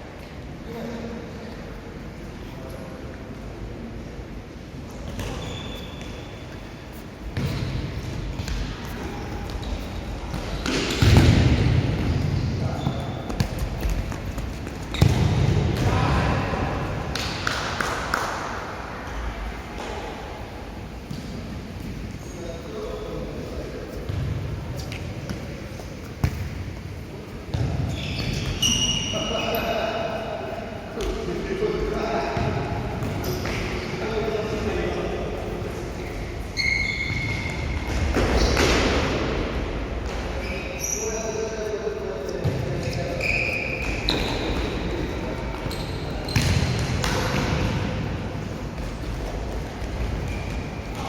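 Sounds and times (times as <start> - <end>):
shoe squeaks: 5.1 - 7.7, 12.4 - 15.3, 27.8 - 29.9, 33.1 - 34.1, 36.5 - 38.6, 40.4 - 41.6, 42.2 - 44.8, 45.6 - 46.6, 50.2 - 51.0
players' voices: 7.4 - 36.6.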